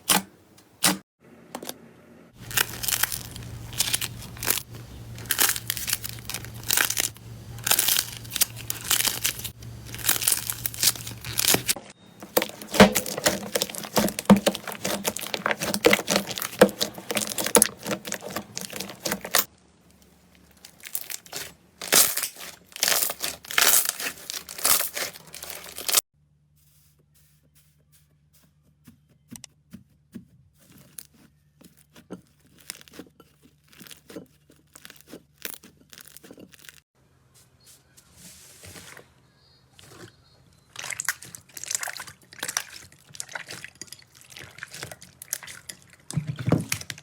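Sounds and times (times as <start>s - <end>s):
slime crackling and popping: 2.4s - 26.0s, 30.7s - 36.8s.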